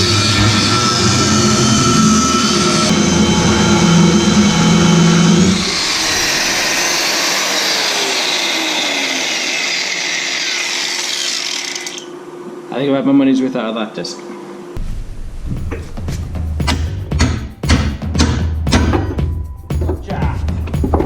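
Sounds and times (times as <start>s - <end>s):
angle grinder cutting steel: 0.0s - 12.1s.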